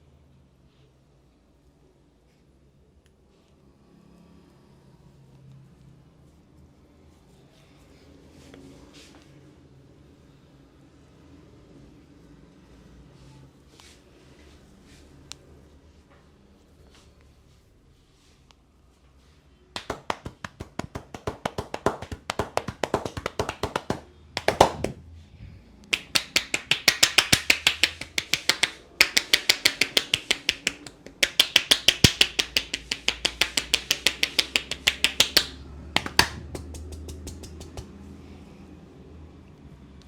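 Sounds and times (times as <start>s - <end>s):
hands slapping on head: 19.8s - 25.0s, 25.9s - 38.0s
hard hand strikes: 19.8s - 25.0s, 25.9s - 37.9s.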